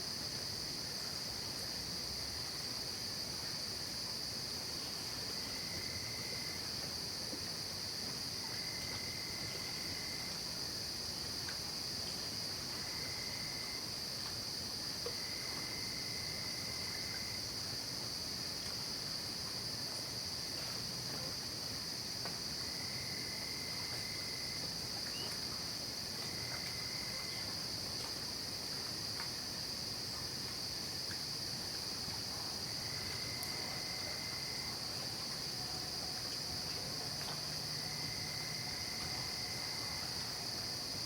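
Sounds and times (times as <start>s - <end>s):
lower cricket trill: 5.2s - 6.8s, 7.6s - 11.3s, 12.2s - 29.9s, 30.6s - 41.0s
high-pitched cricket trill: 5.2s - 27.8s, 32.2s - 41.0s.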